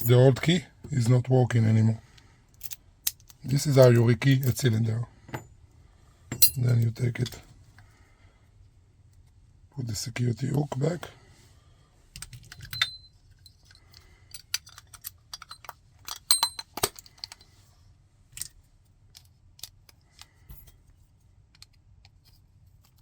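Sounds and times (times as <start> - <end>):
metal lock parts clicking: 2.6 - 4.6, 6.3 - 6.9, 12.2 - 17.5.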